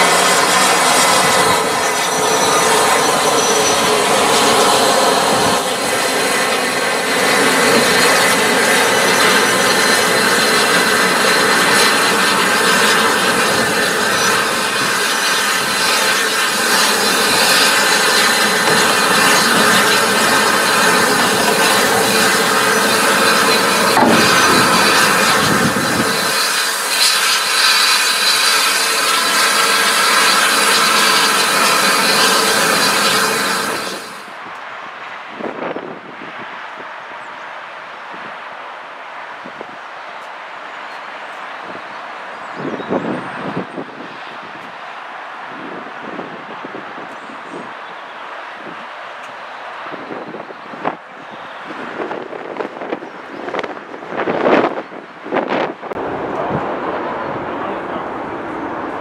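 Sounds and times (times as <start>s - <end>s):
train wheels rolling on rails: 0.0s - 59.0s
falling tone: 16.5s - 26.9s, 55.9s - 59.0s.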